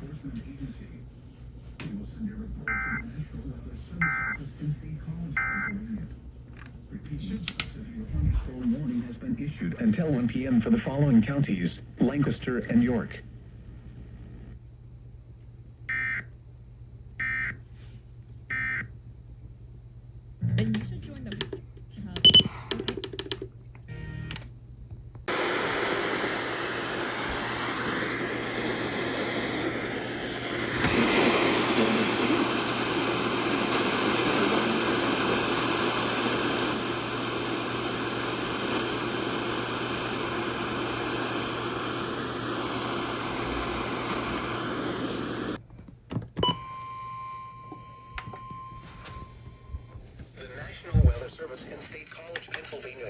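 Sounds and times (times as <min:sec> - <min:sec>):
radio static hiss: 0:00.0 - 0:01.1, 0:06.9 - 0:13.3, 0:25.3 - 0:45.6, 0:50.4 - 0:53.0.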